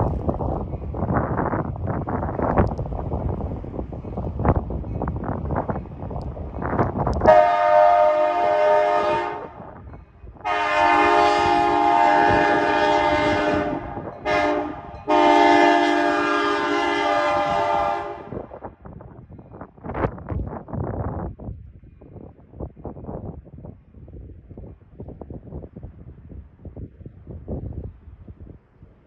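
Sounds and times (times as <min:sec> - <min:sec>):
train rumbling: 0:00.0 - 0:28.8
locomotive horn blasts: 0:07.2 - 0:09.6, 0:10.4 - 0:18.5.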